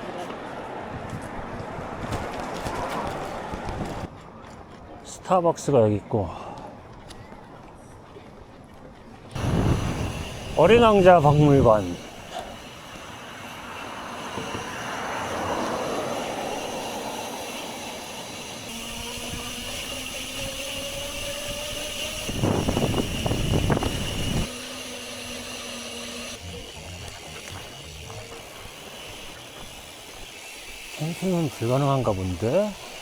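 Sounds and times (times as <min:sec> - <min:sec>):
wind rushing over microphone: 0:00.6 - 0:04.1, 0:09.4 - 0:12.1, 0:18.8 - 0:24.5
rumbling gust: 0:09.4 - 0:12.2
droning hum: 0:09.4 - 0:33.0.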